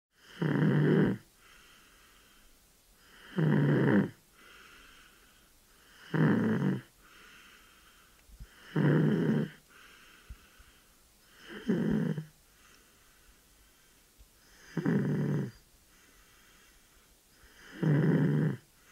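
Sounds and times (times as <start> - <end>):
loud rough snoring: 0.2 - 1.3, 3.0 - 4.7, 5.8 - 7.4, 8.4 - 10.0, 11.3 - 12.3, 14.5 - 15.6, 17.4 - 18.7
faint breathing: 1.2 - 3.4, 4.3 - 17.9, 18.6 - 18.9.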